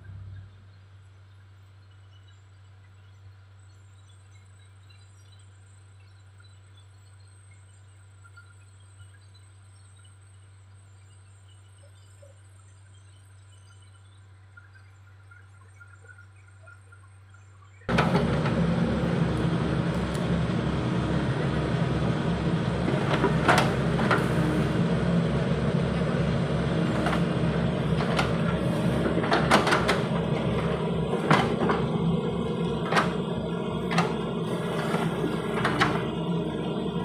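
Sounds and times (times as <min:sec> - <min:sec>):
diesel engine running: 0:17.9 - 0:37.0.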